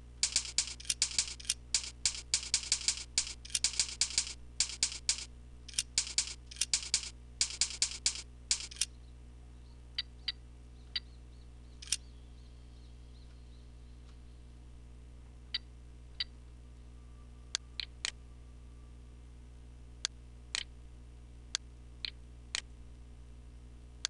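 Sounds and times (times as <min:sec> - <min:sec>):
low hum: 0:00.0 - 0:24.0
keyboard typing: 0:00.2 - 0:08.9
single clicks: 0:11.8 - 0:12.0.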